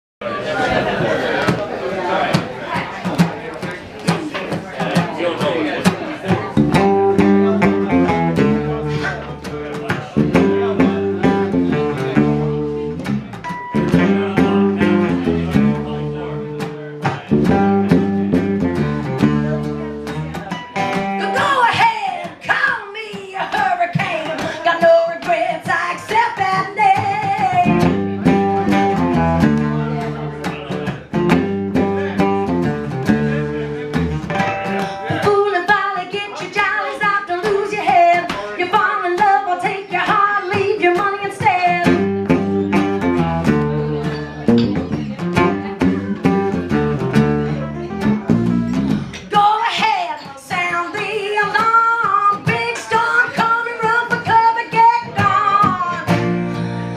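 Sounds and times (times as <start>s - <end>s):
acoustic guitar: 0.3s - 56.9s
low bass line: 6.5s - 20.5s, 27.6s - 34.6s, 41.8s - 49.3s
person singing: 13.7s - 17.4s, 21.2s - 28.0s, 33.2s - 42.9s, 49.2s - 56.3s.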